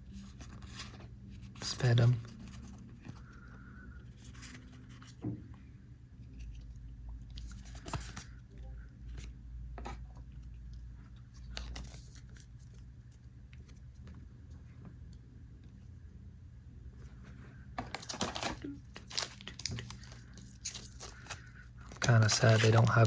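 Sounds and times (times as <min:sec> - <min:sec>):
low steady hum: 0:00.0 - 0:23.0
foil wrapper rustling: 0:17.8 - 0:23.0
trading cards clicking and scraping: 0:17.8 - 0:23.0.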